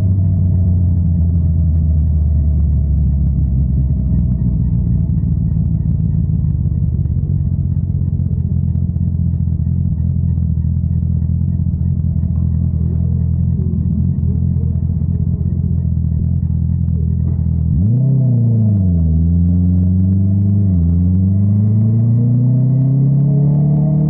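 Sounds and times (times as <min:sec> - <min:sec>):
motorcycle engine idling: 0:00.0 - 0:17.9.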